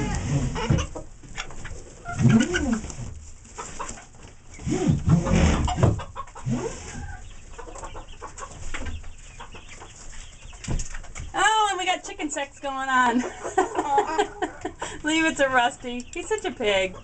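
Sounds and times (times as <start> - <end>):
chickens clucking: 0.0 - 17.0.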